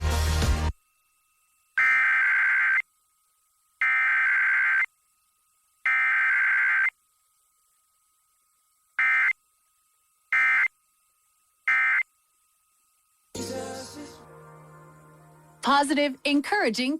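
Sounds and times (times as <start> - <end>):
warbling two-tone digital data bursts: 1.7 - 2.9, 3.8 - 4.9, 5.8 - 7.0, 9.0 - 9.4, 10.3 - 10.8, 11.6 - 12.1.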